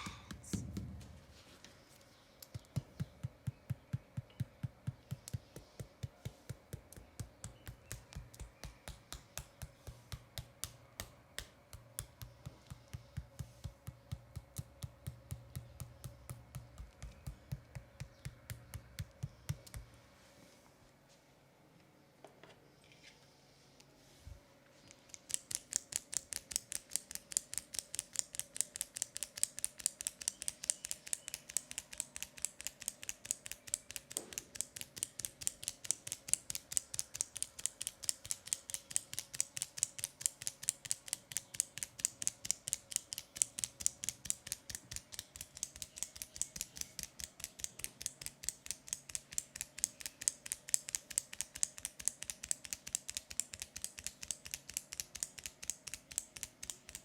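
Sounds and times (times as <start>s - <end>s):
rapid crisp clicking: 24.9s - 57.0s.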